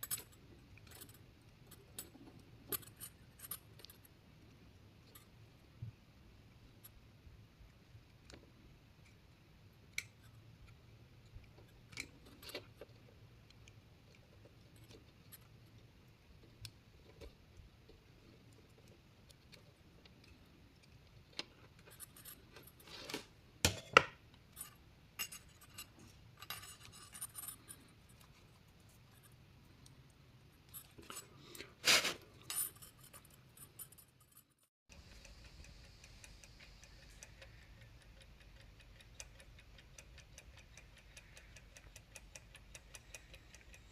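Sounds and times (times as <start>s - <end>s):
steady low hum: 32.4s - 43.9s.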